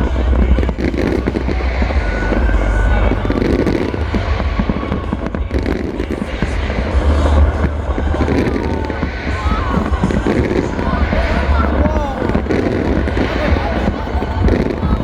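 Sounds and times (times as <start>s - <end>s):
deep rumble of fireworks shells: 0.0s - 15.0s
fireworks crackling: 0.0s - 15.0s.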